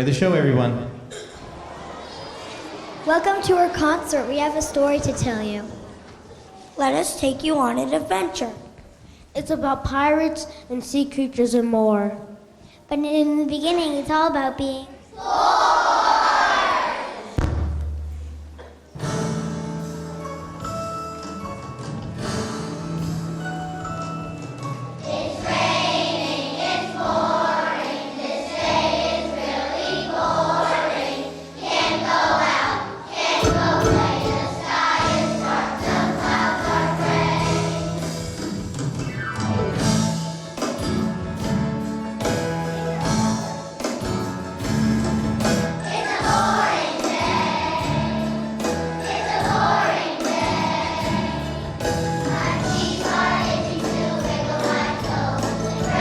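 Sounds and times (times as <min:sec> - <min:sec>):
children's choir singing: 0:01.1 - 0:05.6, 0:15.1 - 0:17.4, 0:24.9 - 0:38.8, 0:45.4 - 0:56.0
instrumental accompaniment: 0:17.4 - 0:56.0.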